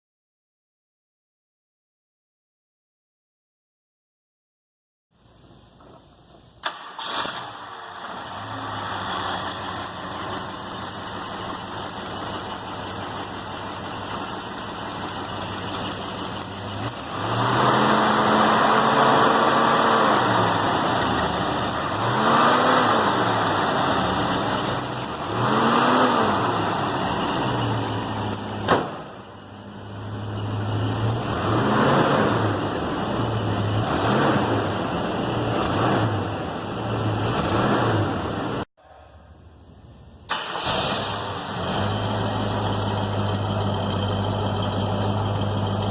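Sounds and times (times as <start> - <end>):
car engine starting: 6.6 - 38.7, 39.5 - 45.9
car engine revving: 7.1 - 38.6
car engine idling: 7.6 - 17.7, 23.0 - 31.4, 41.2 - 45.9.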